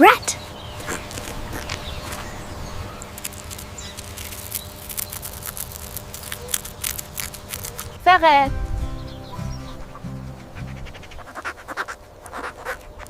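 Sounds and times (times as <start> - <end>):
rat clicking: 3.0 - 8.0.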